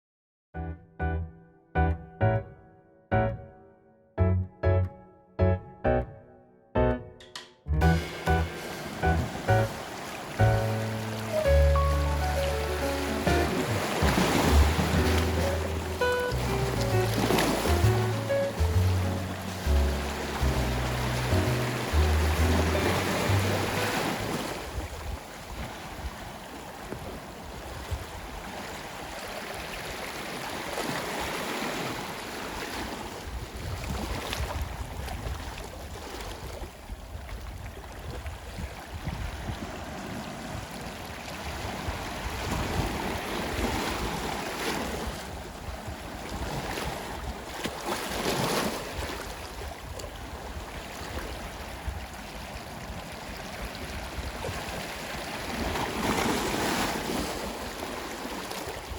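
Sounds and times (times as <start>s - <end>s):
ocean surf washing on shore: 7.8s - 33.5s, 38.9s - 58.9s
waves breaking: 7.8s - 37.0s, 37.8s - 58.9s.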